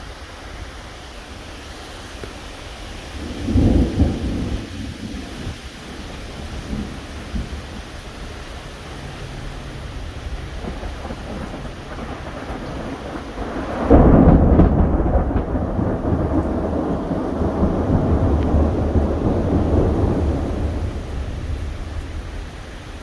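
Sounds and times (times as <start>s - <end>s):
steady rain: 0.0s - 23.0s
thunderclap rumbling: 3.0s - 23.0s.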